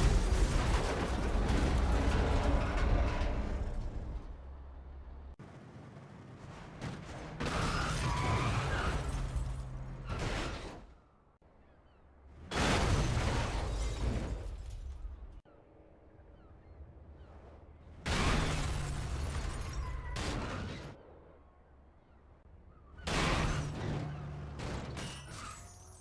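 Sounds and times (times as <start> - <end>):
car crash smash: 0.0 - 4.7, 6.4 - 10.9, 12.4 - 15.4, 18.0 - 21.0, 23.0 - 26.0.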